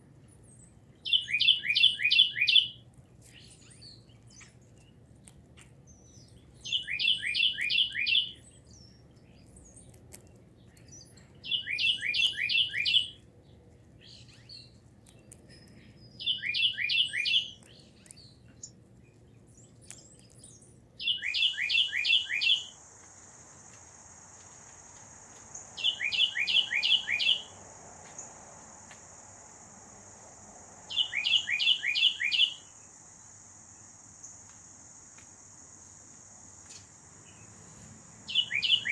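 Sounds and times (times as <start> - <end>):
songbird whistled phrase: 1.1 - 2.8, 6.7 - 8.4, 11.5 - 13.2, 16.2 - 17.6, 21.0 - 22.8, 25.8 - 27.5, 30.9 - 32.7, 38.3 - 38.9.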